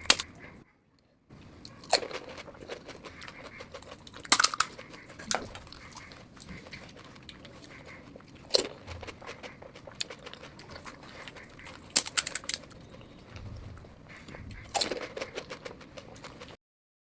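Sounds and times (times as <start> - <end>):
crisp bites of food: 1.6 - 13.5.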